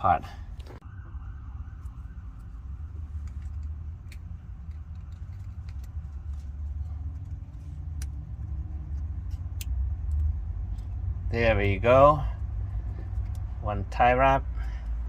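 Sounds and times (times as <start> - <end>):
steady low rumble: 0.0 - 15.0
wiring connector clicks and rattles: 1.8 - 11.0.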